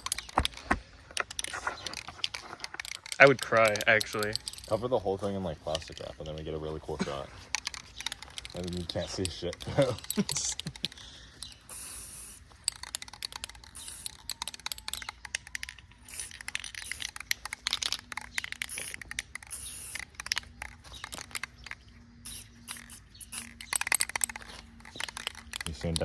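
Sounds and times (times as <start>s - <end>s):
clicks and scrapes of handling: 0.0s - 11.7s, 12.4s - 26.0s
spray paint can hissing: 9.5s - 26.0s.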